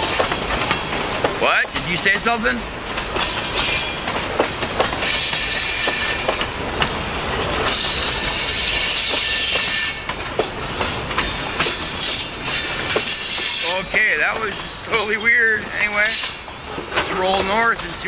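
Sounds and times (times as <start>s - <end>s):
train wheels clicking over rail joints: 0.0s - 18.0s
high-pitched metallic squeal: 5.0s - 6.2s, 7.7s - 10.1s.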